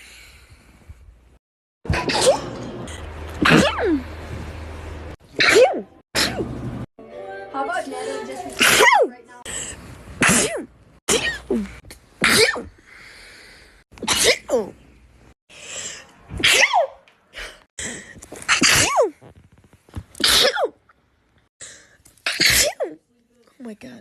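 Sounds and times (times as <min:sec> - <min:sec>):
in-breaths: 0:00.0 - 0:01.2, 0:09.4 - 0:10.0, 0:12.8 - 0:13.8, 0:15.5 - 0:16.2, 0:17.3 - 0:18.2, 0:21.6 - 0:22.1
person sneezing: 0:10.2 - 0:12.7, 0:14.0 - 0:14.7, 0:22.3 - 0:23.0.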